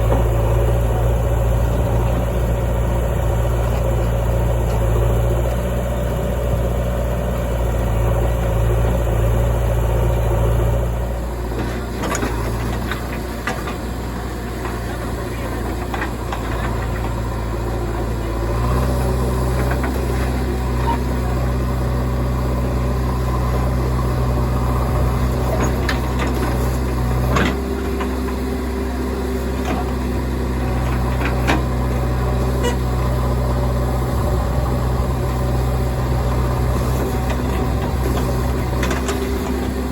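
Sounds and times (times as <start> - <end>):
diesel engines running: 0.0 - 39.9
knocks and clanks of digging: 11.4 - 21.2, 25.1 - 32.8, 36.3 - 39.9.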